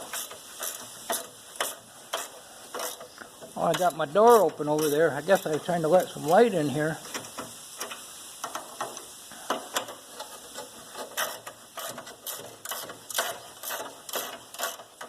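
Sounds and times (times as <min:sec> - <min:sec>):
ratcheting wrench clicking: 0:00.0 - 0:03.1, 0:07.1 - 0:15.0.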